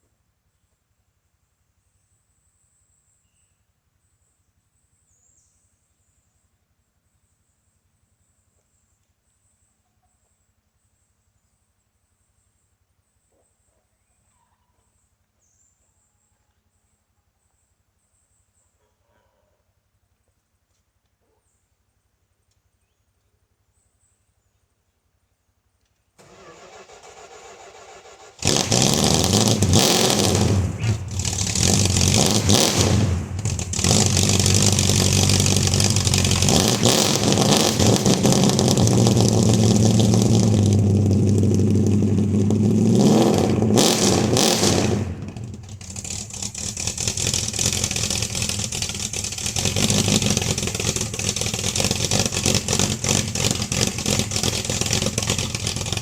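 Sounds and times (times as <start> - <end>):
car engine starting and revving: 26.2 - 56.0.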